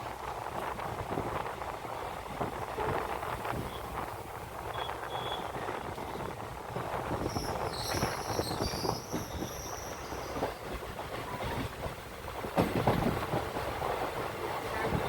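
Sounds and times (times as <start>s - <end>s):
passenger train running on track: 0.0s - 15.0s
wheels clunking on rails: 2.4s - 15.0s
high-pitched wheel squeal: 7.3s - 10.4s.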